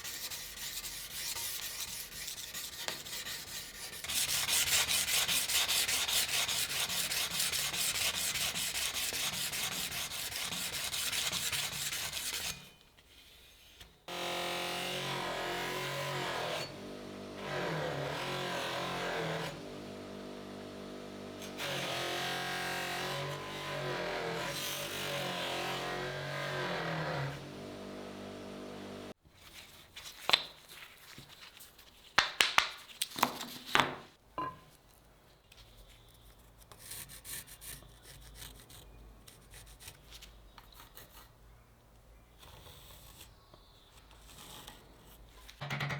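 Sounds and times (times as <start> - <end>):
abrasive rubbing on steel blade: 0.0 - 13.7
power tool running: 14.1 - 29.2.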